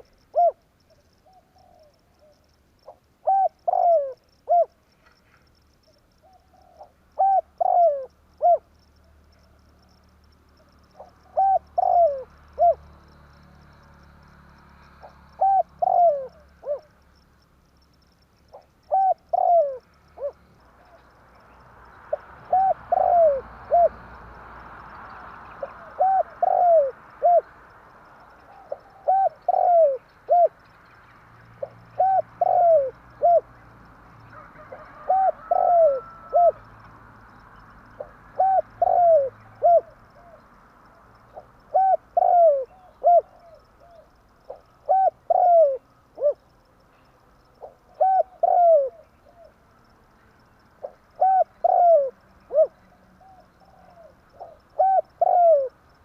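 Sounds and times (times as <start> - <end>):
dove cooing: 0.0 - 4.8, 6.2 - 9.1, 10.8 - 12.9, 15.0 - 17.0, 18.5 - 21.5, 22.1 - 24.1, 25.0 - 27.6, 28.3 - 30.6, 31.6 - 33.6, 34.3 - 36.7, 37.9 - 40.5, 41.3 - 46.5, 47.6 - 49.6, 50.8 - 55.8.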